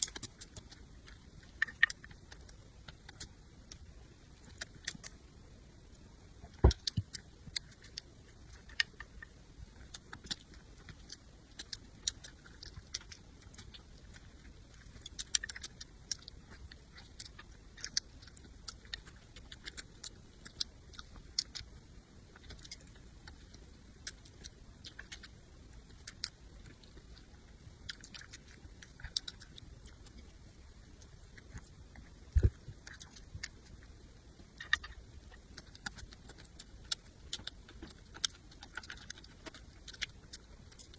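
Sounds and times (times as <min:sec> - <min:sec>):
chewing with wet mouth clicks: 0:00.0 - 0:40.9.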